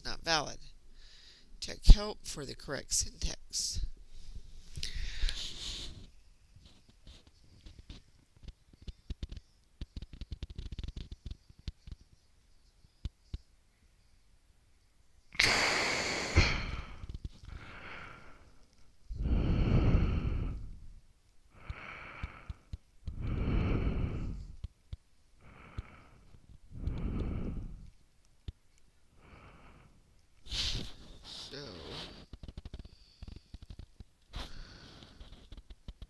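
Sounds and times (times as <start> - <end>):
heavy breathing on microphone: 0.9 - 1.6, 4.0 - 9.3, 15.4 - 24.7, 25.4 - 28.0, 29.1 - 35.6
person sighing: 15.4 - 17.0
faint clicks: 21.2 - 23.2.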